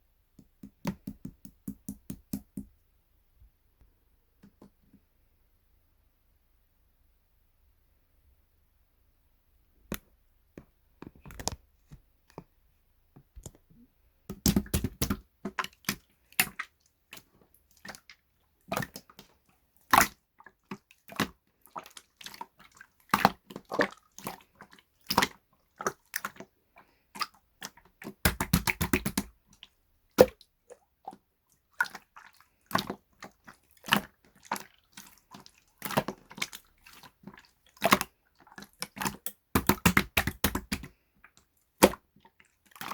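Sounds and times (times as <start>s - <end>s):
sharp clicks and taps: 0.4s - 2.7s.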